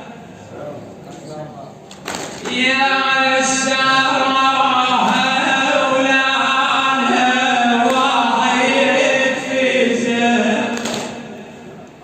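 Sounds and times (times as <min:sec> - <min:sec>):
man chanting a religious lament: 0:02.4 - 0:11.7.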